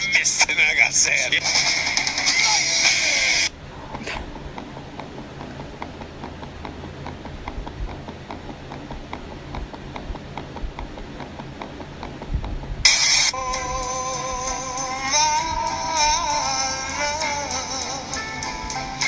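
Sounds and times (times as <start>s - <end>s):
light clops: 3.9s - 12.8s.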